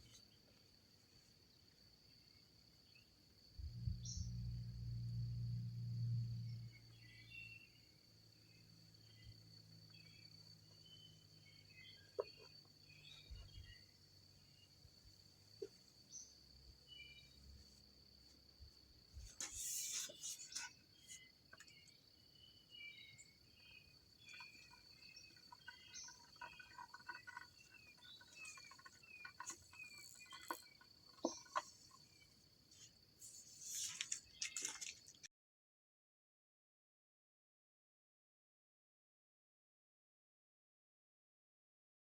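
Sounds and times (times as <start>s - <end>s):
high insect trill: 0.0s - 35.2s
birds chirping: 19.4s - 32.3s.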